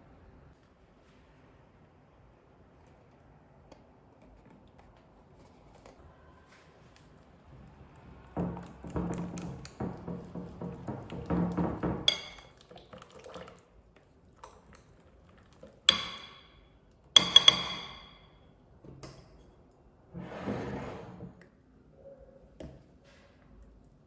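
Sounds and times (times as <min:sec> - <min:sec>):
utensils clinking on dishes: 0:11.1 - 0:12.6, 0:17.2 - 0:18.4.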